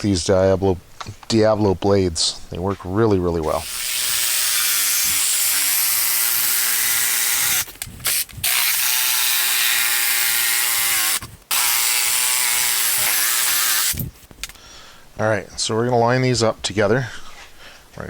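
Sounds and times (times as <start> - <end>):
jigsaw cutting wood: 3.5 - 14.0.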